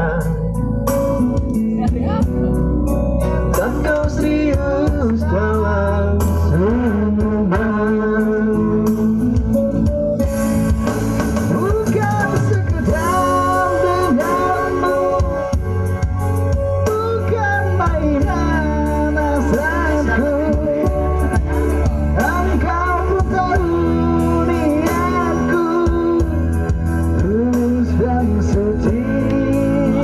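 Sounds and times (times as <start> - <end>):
person singing: 0.0 - 9.9, 11.5 - 16.0, 16.8 - 30.0
guitar and bass: 0.0 - 30.0.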